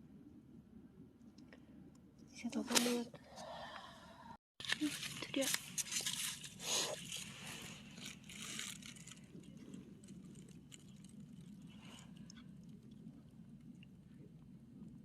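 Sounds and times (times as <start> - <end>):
animal chewing and crunching: 4.6 - 15.0
small irregular clicks: 4.6 - 15.0.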